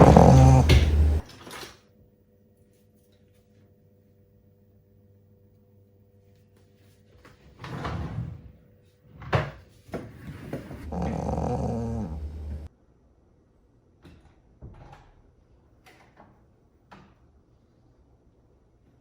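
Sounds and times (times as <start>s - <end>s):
person snoring: 0.0s - 1.2s, 10.8s - 12.7s.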